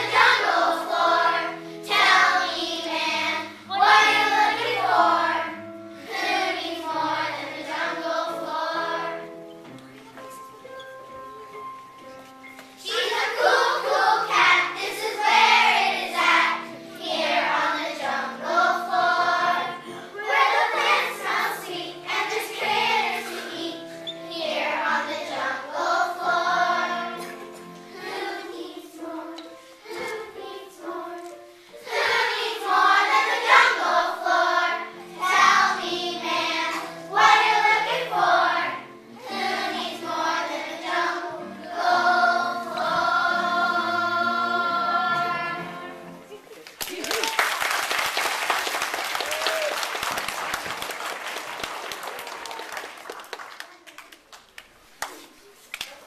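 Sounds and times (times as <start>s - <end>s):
children's choir singing: 0.0s - 9.6s, 12.8s - 46.3s
instrumental accompaniment: 0.0s - 46.7s.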